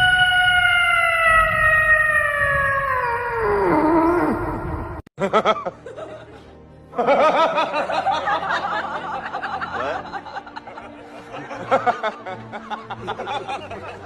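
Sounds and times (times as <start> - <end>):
falling pitched howl: 0.0 - 5.0
background music: 0.0 - 14.0
rapid laughter: 7.0 - 14.0.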